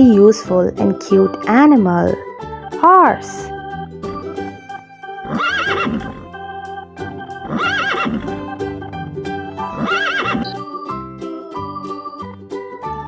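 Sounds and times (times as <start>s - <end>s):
background music with organ: 0.0s - 13.0s
horse whinnying: 5.3s - 6.2s, 7.4s - 8.4s, 9.6s - 10.6s.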